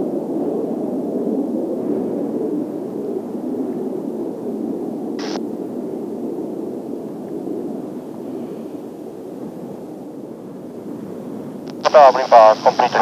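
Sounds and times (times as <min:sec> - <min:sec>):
distant jet noise: 0:00.0 - 0:10.1, 0:10.8 - 0:13.0
burst of hiss: 0:05.2 - 0:05.4.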